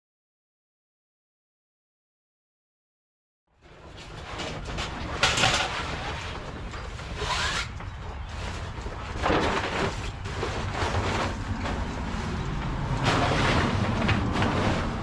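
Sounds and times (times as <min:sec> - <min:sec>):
wind rumbling on microphone: 0:04.7 - 0:15.0.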